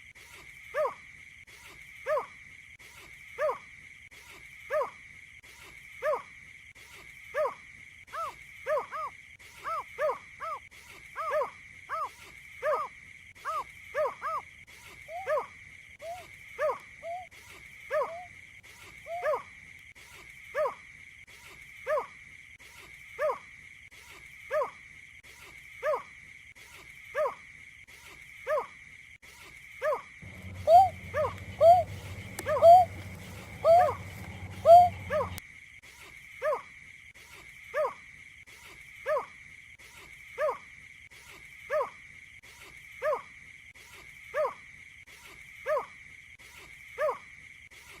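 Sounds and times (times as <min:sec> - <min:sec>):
bird call hooting note: 0:30.2 - 0:35.4
steady high hum: 0:30.2 - 0:35.4.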